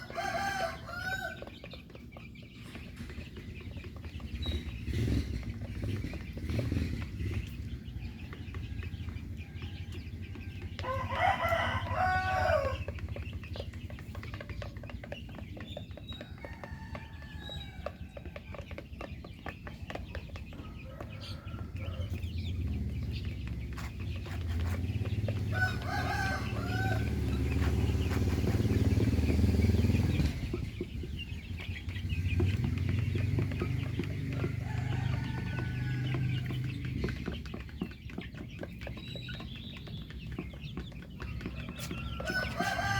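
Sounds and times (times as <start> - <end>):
rooster crowing: 0.0 - 1.5, 10.7 - 12.9, 25.4 - 27.5, 34.4 - 36.7, 41.5 - 42.9
chickens clucking: 0.0 - 42.9.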